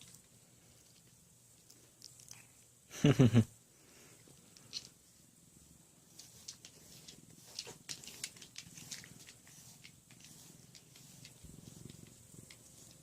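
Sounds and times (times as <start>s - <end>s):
cat purring: 5.6s - 13.0s
brush rasping through fur: 6.1s - 13.0s.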